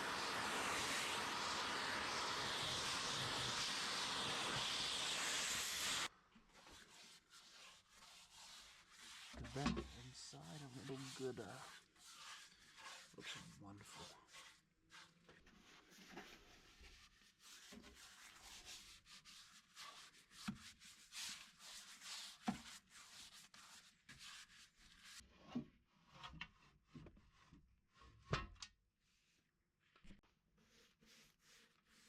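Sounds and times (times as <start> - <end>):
hand rubbing on wood: 6.9 - 15.1.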